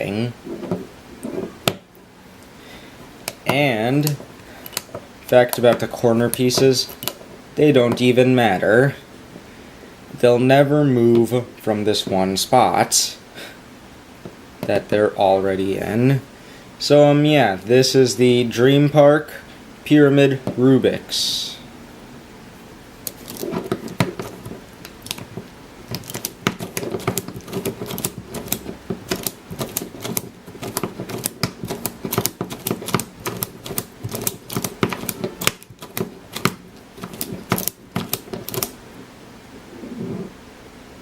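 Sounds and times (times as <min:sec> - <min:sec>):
plastic puzzle clicking: 0:03.2 - 0:07.2, 0:23.0 - 0:38.8.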